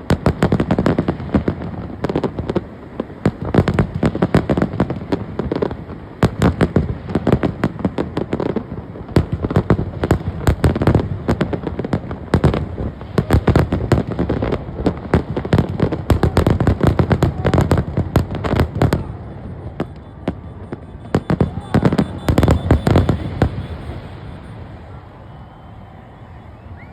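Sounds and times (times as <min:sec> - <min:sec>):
fireworks bangs and crackles: 0:00.0 - 0:26.9.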